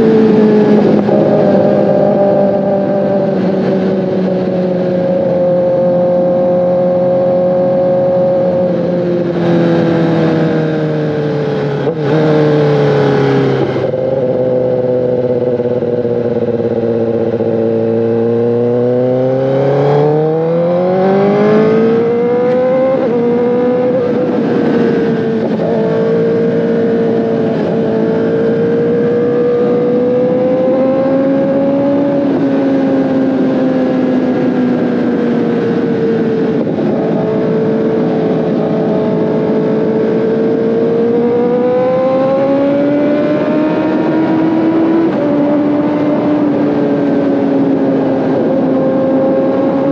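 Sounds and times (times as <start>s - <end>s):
motorcycle engine revving: 0.0s - 49.9s.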